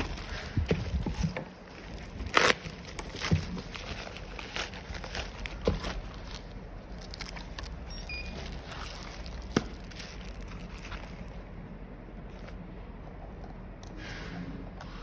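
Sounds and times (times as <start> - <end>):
packaging rustling: 0.0 - 11.6.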